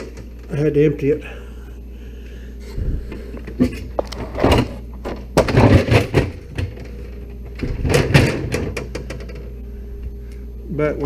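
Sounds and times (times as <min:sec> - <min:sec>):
refrigerator parts clunking and rattling: 0:00.0 - 0:00.7, 0:03.0 - 0:09.6.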